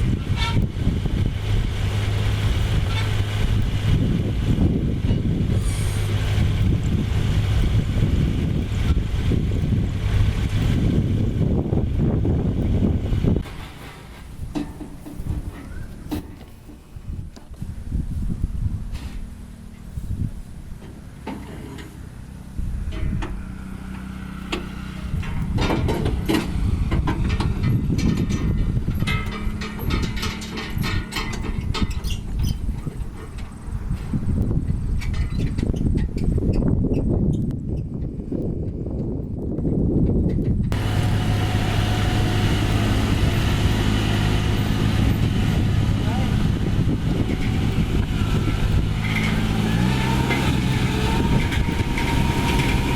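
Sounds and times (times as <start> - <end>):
diesel engine running: 0.0 - 37.2, 38.2 - 52.9
metallic clanks and knocks: 13.4 - 16.8, 24.0 - 33.6.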